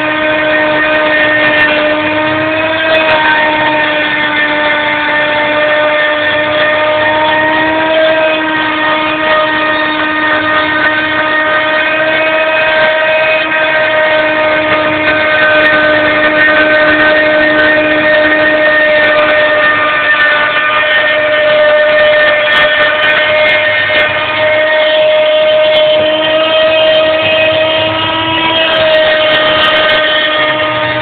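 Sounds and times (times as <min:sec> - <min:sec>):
mill spindle whining: 0:00.0 - 0:31.0.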